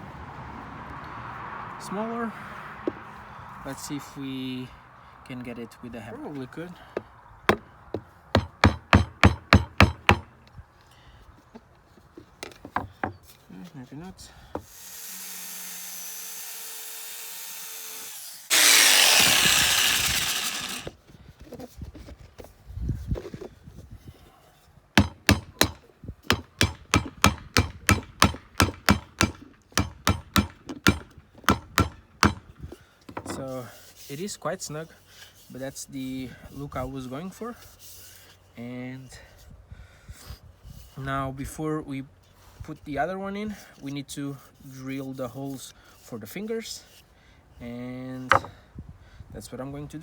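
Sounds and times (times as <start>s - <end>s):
hammer knocking: 7.5s - 10.3s, 25.0s - 32.5s, 48.3s - 48.5s.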